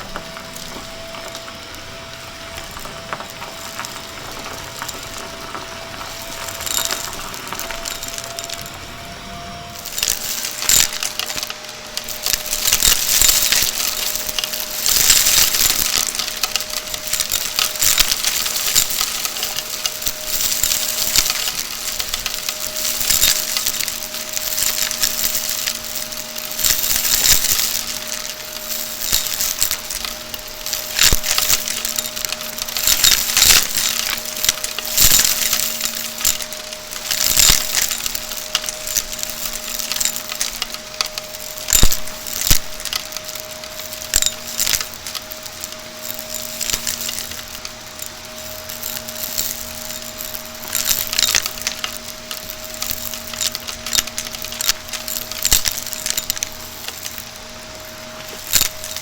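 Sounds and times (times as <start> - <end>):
debris rattling through vacuum: 0.0 - 59.0
vacuum cleaner humming: 0.0 - 59.0.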